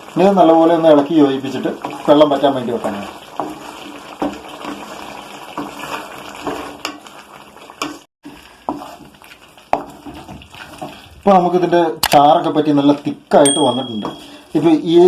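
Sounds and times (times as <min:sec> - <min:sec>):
food sizzling and bubbling: 0:00.0 - 0:15.0
spoon knocking against pan: 0:13.5 - 0:14.4.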